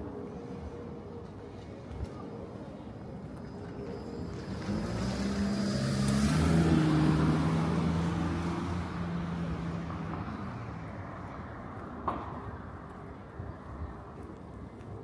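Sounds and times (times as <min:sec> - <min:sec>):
car driving past: 0:04.3 - 0:10.9.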